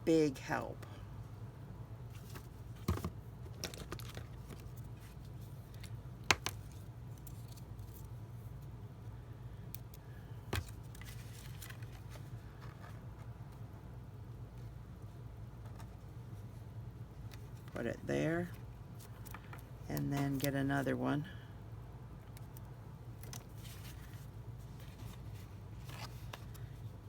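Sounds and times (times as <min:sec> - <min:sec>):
paper and card handling: 0:02.1 - 0:08.2, 0:09.8 - 0:13.6, 0:17.3 - 0:20.9, 0:23.2 - 0:27.0.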